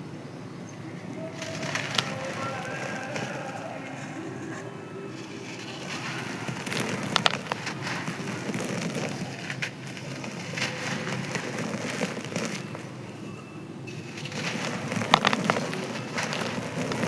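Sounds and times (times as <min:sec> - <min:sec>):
sand-cement chunks crumbling: 0:00.9 - 0:17.0
sharp cracks: 0:01.0 - 0:13.1.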